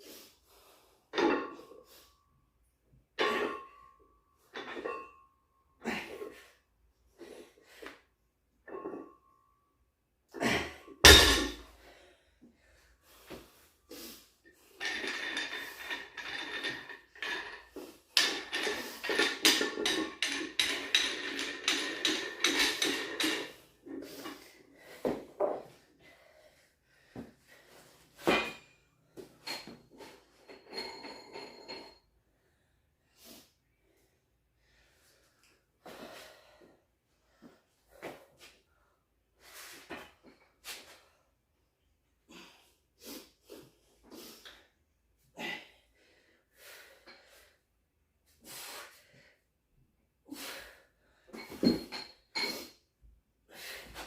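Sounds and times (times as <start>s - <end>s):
metal clanks: 11.0s - 11.7s.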